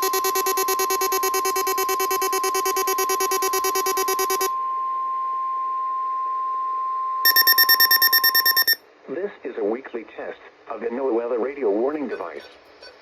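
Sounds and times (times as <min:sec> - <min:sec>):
steady warning alarm tone: 0:07.2 - 0:08.8.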